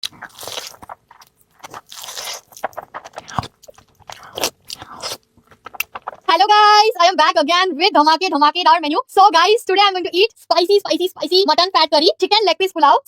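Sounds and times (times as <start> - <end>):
crunchy chewing: 0.0 - 6.3.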